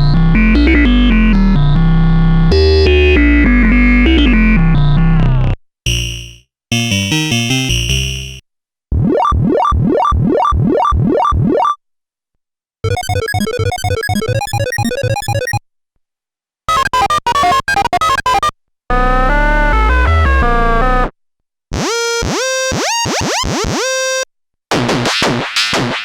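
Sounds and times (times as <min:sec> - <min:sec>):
deep synth bass line: 0:00.0 - 0:08.4
synthesizer sequenced pattern: 0:05.9 - 0:08.4, 0:12.9 - 0:15.6.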